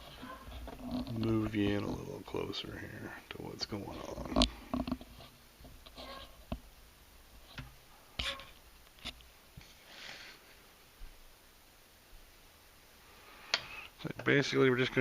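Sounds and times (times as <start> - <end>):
soft rustling hisses: 7.3 - 11.4, 12.1 - 15.0.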